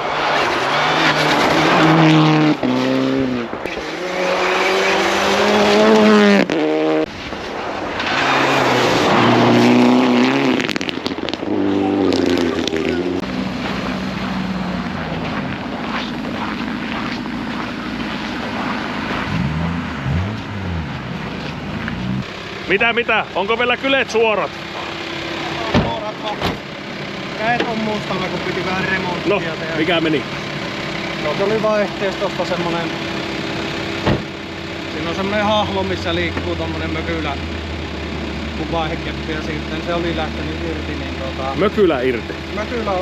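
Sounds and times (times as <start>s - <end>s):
rally car engine revving: 0.0s - 43.0s
tyre noise: 0.2s - 22.3s.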